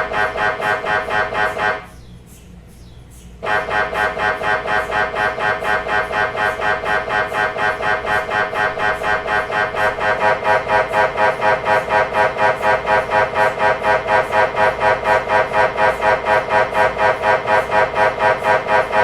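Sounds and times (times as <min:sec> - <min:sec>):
mri scanner pulsing buzz: 0:00.0 - 0:02.8, 0:03.4 - 0:19.0.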